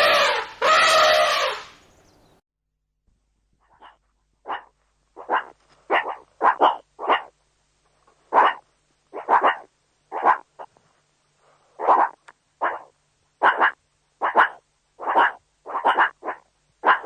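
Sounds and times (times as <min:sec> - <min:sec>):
dog barking: 0:03.8 - 0:07.3, 0:08.3 - 0:08.6, 0:09.2 - 0:10.5, 0:11.8 - 0:17.0.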